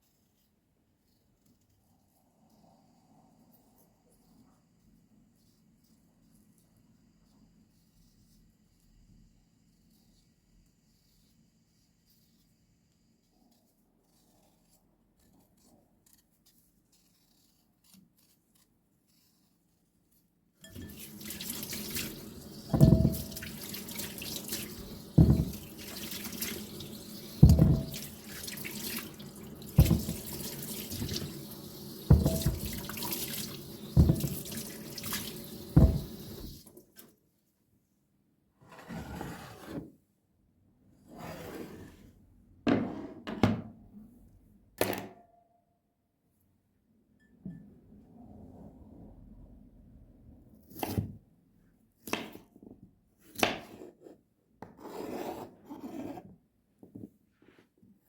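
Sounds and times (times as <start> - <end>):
water running from tap: 20.7 - 36.7.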